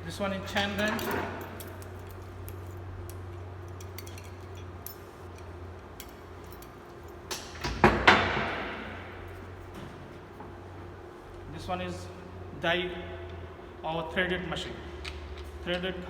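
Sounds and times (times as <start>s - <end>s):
metal tools clinking and rattling: 0.2s - 7.8s.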